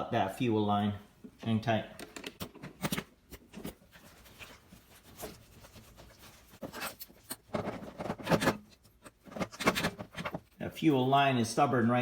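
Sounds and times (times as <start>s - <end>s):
scraping and rubbing on rubber: 3.6s - 10.5s.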